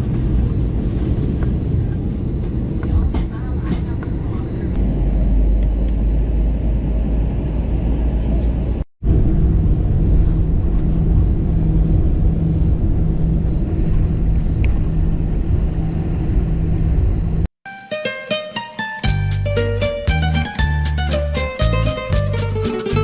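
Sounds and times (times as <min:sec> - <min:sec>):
car engine and road noise: 0:04.6 - 0:08.9.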